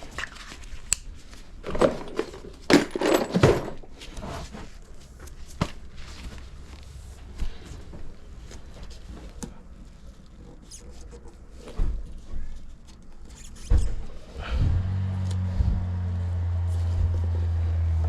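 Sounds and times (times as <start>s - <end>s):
tools clicking and knocking: 1.7s - 3.9s.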